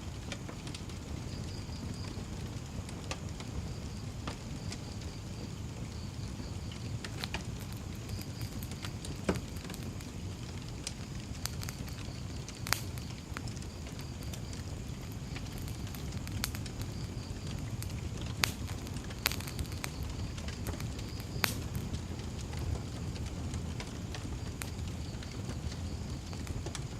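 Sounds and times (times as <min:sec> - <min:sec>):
wood fire crackling: 0:00.0 - 0:26.9
sharp pops: 0:07.1 - 0:10.1, 0:11.2 - 0:22.0.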